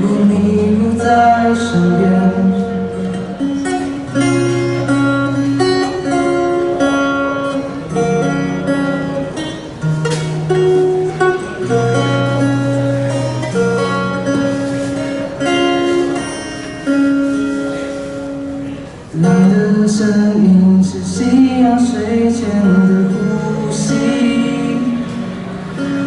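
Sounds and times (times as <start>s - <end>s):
acoustic guitar strumming chords: 0.0s - 26.0s.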